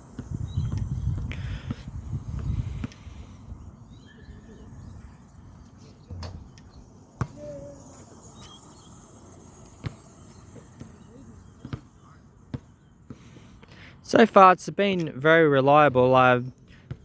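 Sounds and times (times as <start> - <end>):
wind rumbling on microphone: 0.0 - 5.2.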